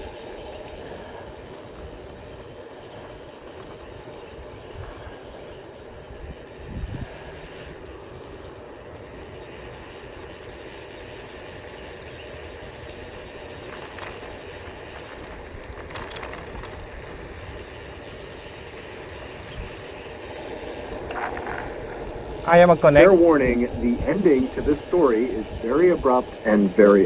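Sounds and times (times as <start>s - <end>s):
bicycle tyres rolling on trail: 0.0s - 27.0s
wind on microphone: 6.0s - 7.2s.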